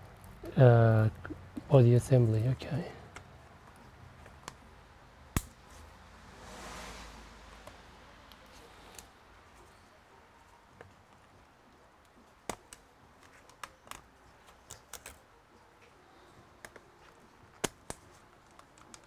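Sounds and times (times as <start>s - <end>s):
plastic laptop parts clicking: 12.0s - 16.0s, 16.6s - 19.0s.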